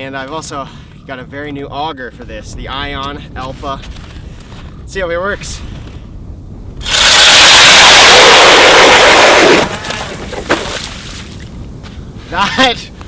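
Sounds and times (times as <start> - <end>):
ice auger drilling: 6.8 - 10.2.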